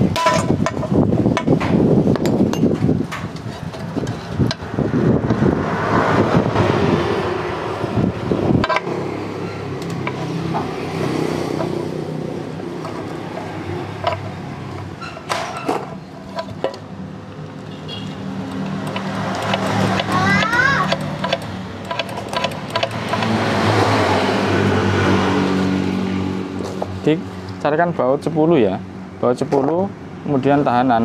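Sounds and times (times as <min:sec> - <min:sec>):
hand tools tapping on metal: 0:00.1 - 0:04.7, 0:08.6 - 0:08.9, 0:09.8 - 0:10.8, 0:11.5 - 0:11.8, 0:12.7 - 0:23.5
vehicle engine running: 0:16.0 - 0:24.8.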